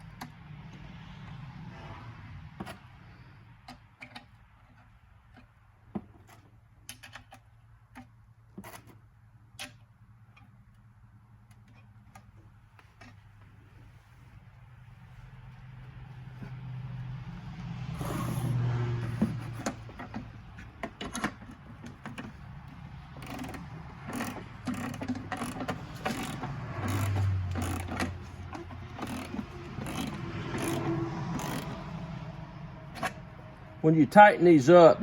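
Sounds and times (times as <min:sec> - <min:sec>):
wrench and nuts clicking: 0:19.2 - 0:31.9.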